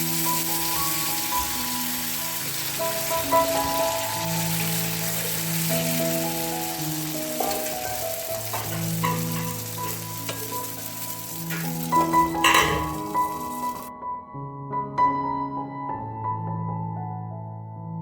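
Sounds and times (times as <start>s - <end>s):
batter sizzling in oil: 0.0s - 13.9s
background music: 0.0s - 18.0s.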